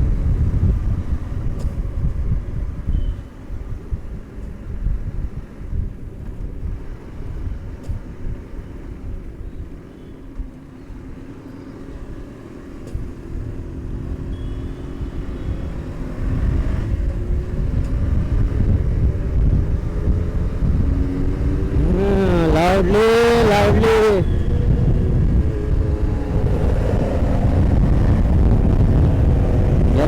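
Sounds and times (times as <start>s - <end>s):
wind rumbling on microphone: 0.0s - 9.8s, 11.9s - 30.0s
motorcycle engine running: 11.9s - 30.0s.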